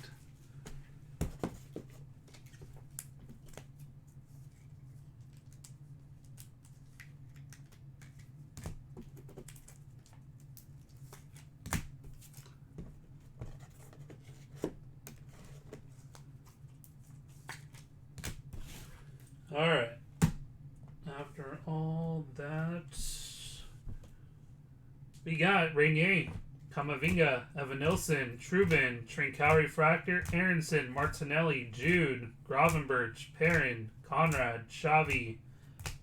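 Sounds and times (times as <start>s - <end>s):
steady low hum: 0.0s - 36.0s
cards clicking and sliding: 14.0s - 19.1s, 26.3s - 36.0s.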